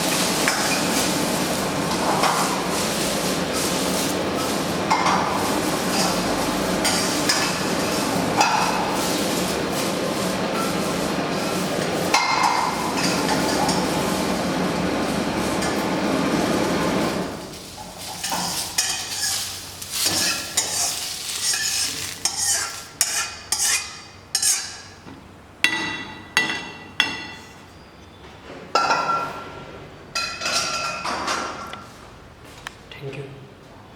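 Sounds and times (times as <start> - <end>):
metal utensils and dishes clinking: 1.9 - 14.2, 17.5 - 24.9
steady hiss: 17.2 - 23.1.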